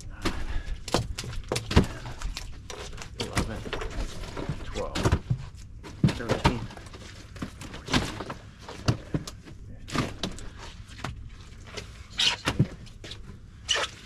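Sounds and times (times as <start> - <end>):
fish flopping: 0.1 - 4.2.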